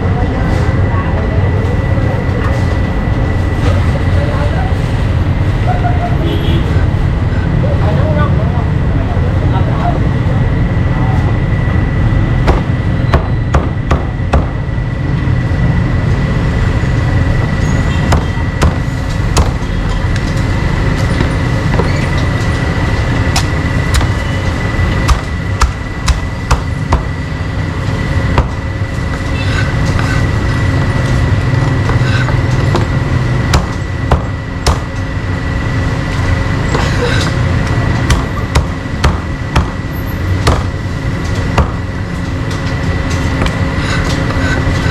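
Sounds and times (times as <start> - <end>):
street traffic rumble: 0.0 - 44.9
cleaver chopping meat on wood: 12.5 - 14.6, 25.1 - 27.2, 33.5 - 34.9, 38.1 - 39.8, 40.4 - 40.8.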